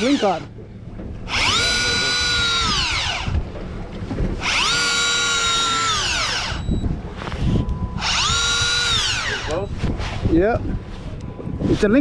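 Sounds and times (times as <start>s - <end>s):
electric fishing reel motor whine: 0.0s - 0.5s, 1.3s - 3.5s, 4.4s - 6.9s, 8.0s - 9.8s.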